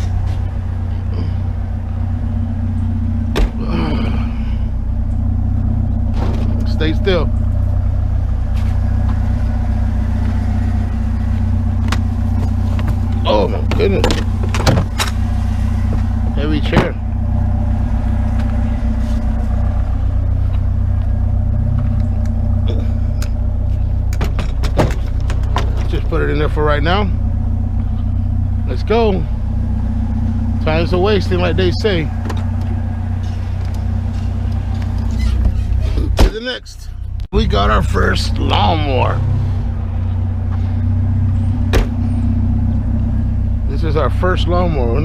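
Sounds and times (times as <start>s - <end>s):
vehicle engine idling: 0.0s - 45.0s.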